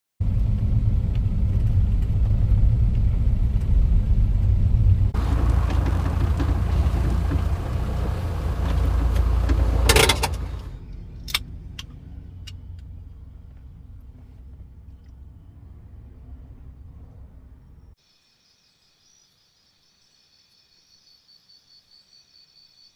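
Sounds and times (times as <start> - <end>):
car rumbling: 0.2 - 18.0
loud crackle: 5.2 - 10.6.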